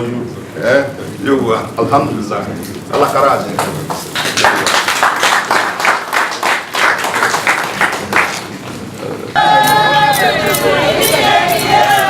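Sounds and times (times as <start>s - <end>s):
people applauding: 3.5s - 12.0s.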